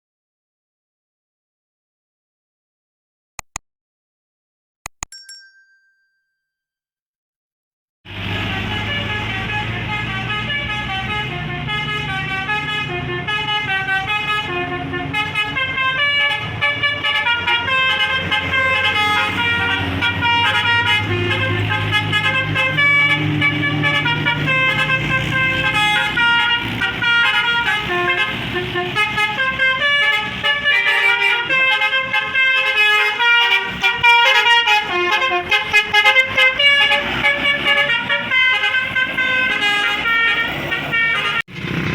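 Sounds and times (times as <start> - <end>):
bus horn playing tune: 8.1 - 41.6
bus engine humming: 8.1 - 41.9.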